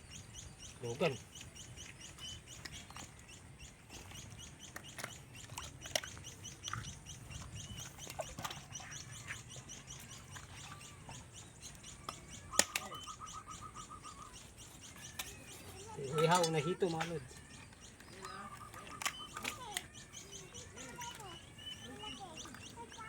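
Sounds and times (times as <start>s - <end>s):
birds chirping: 0.0s - 23.0s
fast bird trill: 0.0s - 23.0s
sharp clicks: 11.7s - 13.1s, 17.0s - 22.7s.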